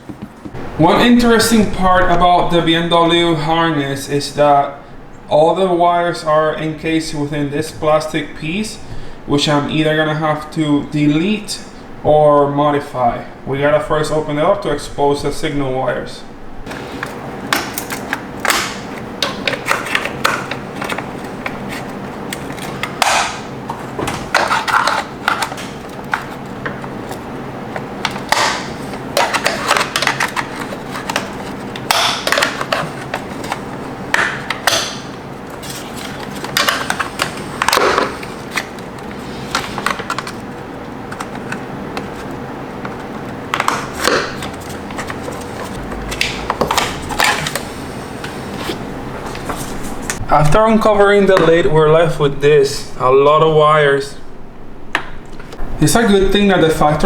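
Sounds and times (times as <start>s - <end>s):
faint steady hum: 0.0s - 57.0s
plastic cover clicking and snapping: 22.3s - 27.2s, 28.0s - 35.1s, 36.0s - 38.8s.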